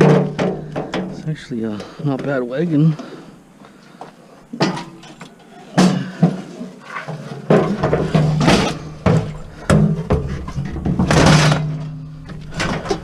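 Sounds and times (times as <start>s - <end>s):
steady low hum: 0.0s - 13.0s
scrap items clattering: 4.6s - 13.0s
scraping rattle: 4.6s - 13.0s.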